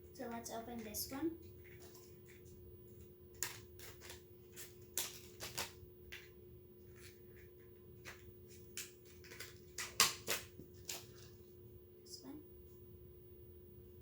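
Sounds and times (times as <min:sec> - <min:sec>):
plastic package crinkling: 0:01.5 - 0:06.3, 0:06.9 - 0:11.4.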